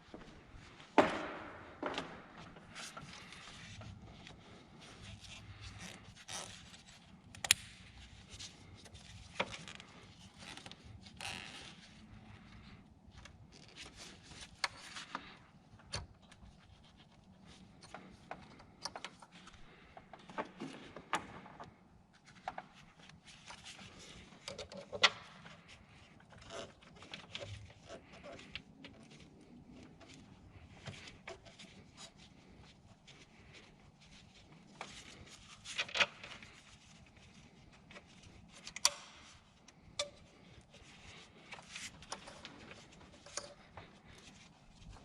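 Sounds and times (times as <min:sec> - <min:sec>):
hands working on tools: 0:13.2 - 0:45.0.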